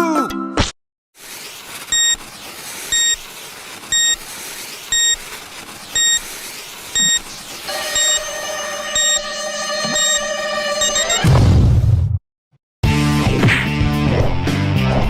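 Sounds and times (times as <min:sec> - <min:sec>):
electronic timer beeping: 0:01.9 - 0:02.2, 0:02.9 - 0:03.2, 0:03.9 - 0:04.2, 0:04.9 - 0:05.2, 0:06.0 - 0:06.2, 0:06.9 - 0:11.2.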